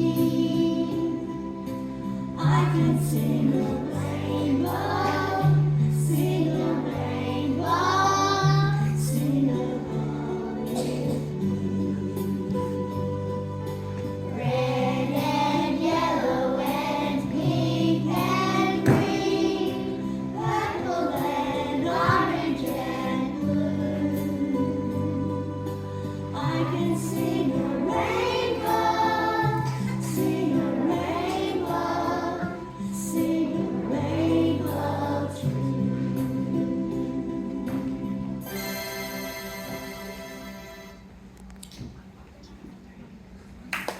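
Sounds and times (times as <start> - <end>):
children singing: 0.0 - 1.4, 2.4 - 12.8, 14.3 - 37.2.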